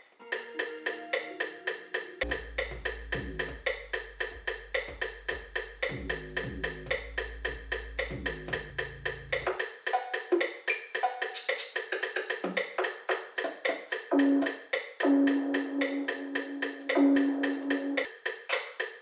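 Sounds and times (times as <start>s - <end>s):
hip-hop instrumental beat: 0.2s - 19.0s
wood-block-like percussion hits: 1.2s - 19.0s
deep held bass note: 2.2s - 4.2s.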